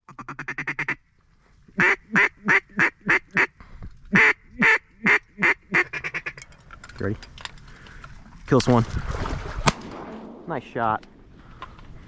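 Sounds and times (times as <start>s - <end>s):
duck quacking: 0.1s - 1.0s, 1.8s - 6.4s.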